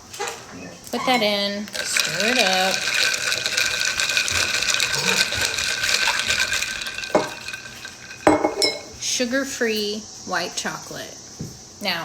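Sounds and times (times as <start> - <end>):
ice cubes rattling in cup: 1.2 - 9.1.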